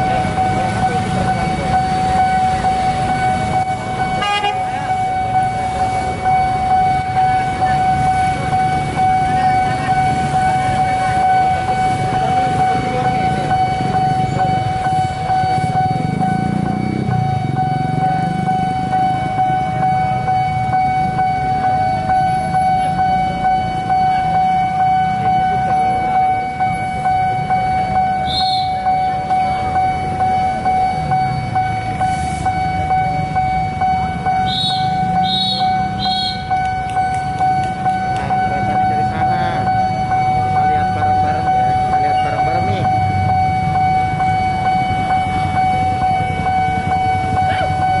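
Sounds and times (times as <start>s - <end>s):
crossing warning siren high tone: 0.0s - 48.0s
motorbikes and cars passing: 0.0s - 48.0s.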